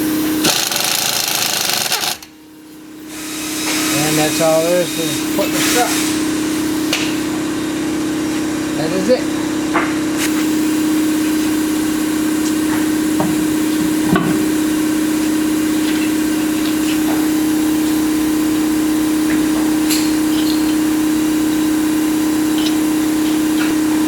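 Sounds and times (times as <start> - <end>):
machine hum: 0.0 - 2.9.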